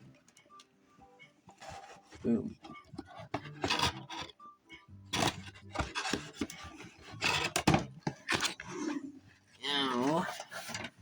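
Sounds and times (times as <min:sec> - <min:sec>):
cardboard box scraping and knocking: 0:01.6 - 0:04.3, 0:05.2 - 0:08.7.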